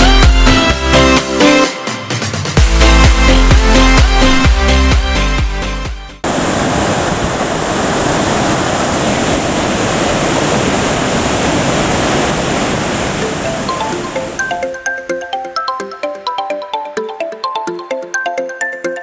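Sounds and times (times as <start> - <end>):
electronic dance music: 0.0 - 6.1
water rushing: 6.2 - 14.8.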